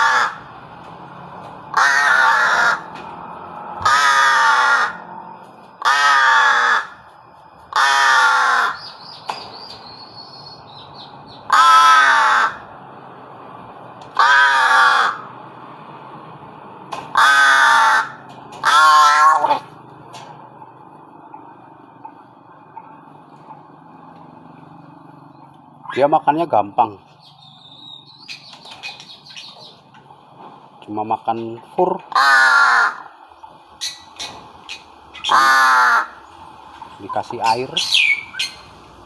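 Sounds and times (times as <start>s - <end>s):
bird calling: 5.8s - 12.7s, 27.0s - 30.0s, 32.1s - 39.0s.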